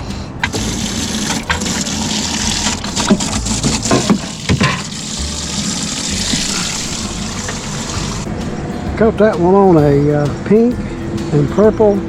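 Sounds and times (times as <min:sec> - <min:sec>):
water gushing and splashing: 0:00.4 - 0:08.3.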